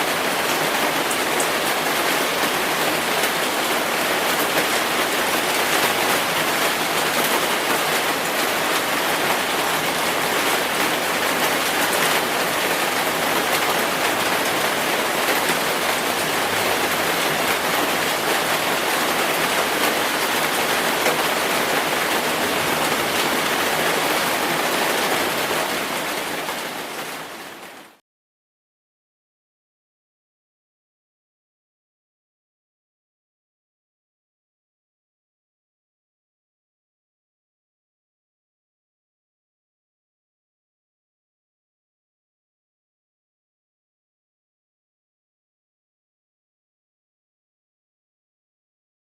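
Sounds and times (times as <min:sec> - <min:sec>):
heavy rain falling: 0:00.0 - 0:28.0.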